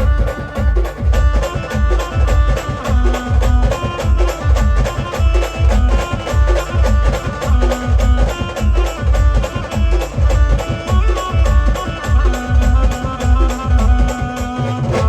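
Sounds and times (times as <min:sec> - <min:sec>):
heavy steady drumbeat: 0:00.0 - 0:15.0
held melody: 0:00.0 - 0:15.0.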